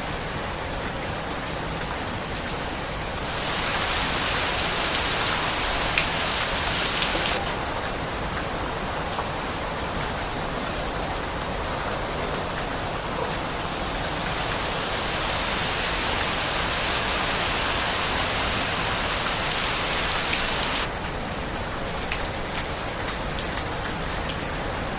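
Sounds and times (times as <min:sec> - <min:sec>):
steady rain falling: 0:00.0 - 0:24.9.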